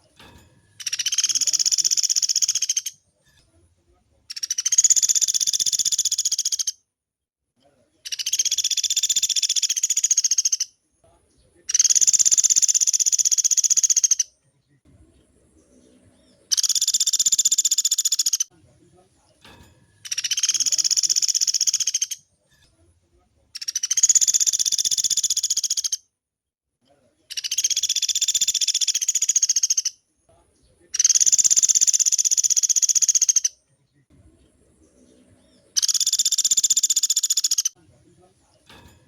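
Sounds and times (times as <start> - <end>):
woodpecker rattling trills: 0.6 - 3.0, 4.3 - 6.8, 8.1 - 10.7, 11.7 - 14.3, 15.4 - 18.5, 20.0 - 22.3, 23.6 - 26.0, 27.3 - 30.0, 30.9 - 33.6, 34.5 - 37.8.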